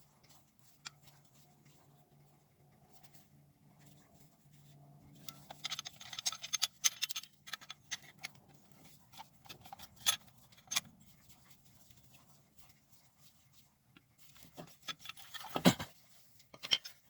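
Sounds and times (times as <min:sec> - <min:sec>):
small metal parts clicking: 0:05.2 - 0:10.9, 0:14.7 - 0:15.8, 0:16.5 - 0:17.0.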